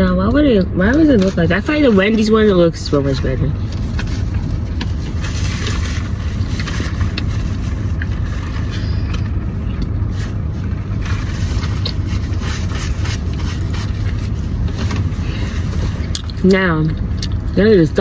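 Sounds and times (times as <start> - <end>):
car cabin rumble: 0.0 - 18.0.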